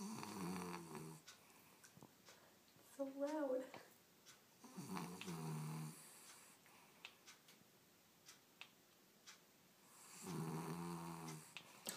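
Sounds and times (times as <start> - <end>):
dog snoring: 0.0 - 1.2, 4.6 - 6.6, 9.9 - 11.6
faint ticks: 0.1 - 7.6, 8.2 - 9.4, 10.0 - 11.9.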